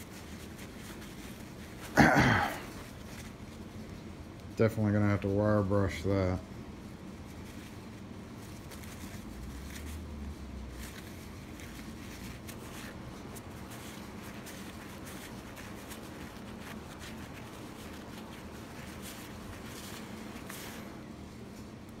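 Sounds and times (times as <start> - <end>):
low room hum: 0.0 - 22.0
handling clicks and rustles: 7.0 - 22.0.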